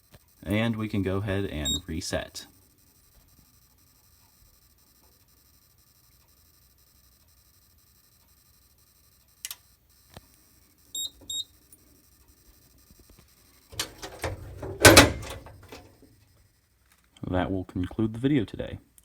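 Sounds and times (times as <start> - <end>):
clicks: 13.8 - 15.8
equipment clicks and knocks: 13.8 - 15.9.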